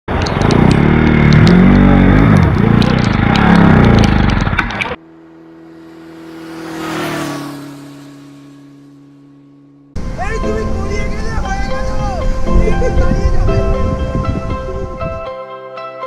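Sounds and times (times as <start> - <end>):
motorcycle engine revving: 0.1 - 10.2.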